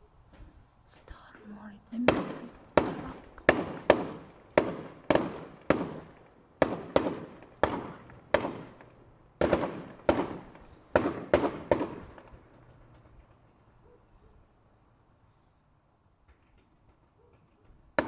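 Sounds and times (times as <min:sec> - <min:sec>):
fireworks exploding with echoes: 0:01.8 - 0:13.6.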